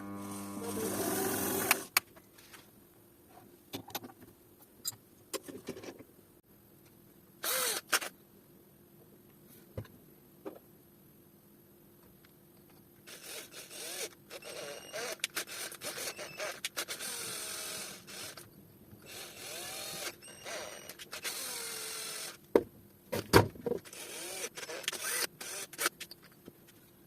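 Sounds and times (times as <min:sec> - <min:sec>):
small power tool motor whirring: 0:00.0 - 0:01.9, 0:07.4 - 0:08.1, 0:13.1 - 0:18.4, 0:19.0 - 0:22.4, 0:23.8 - 0:25.9.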